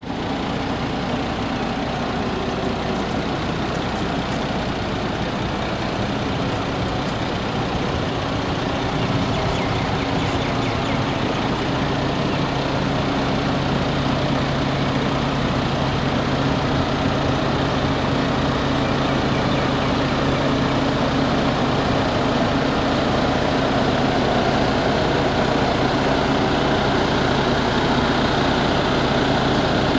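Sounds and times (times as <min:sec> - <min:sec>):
diesel truck engine idling: 0:00.0 - 0:29.9
steady hum: 0:26.5 - 0:29.9.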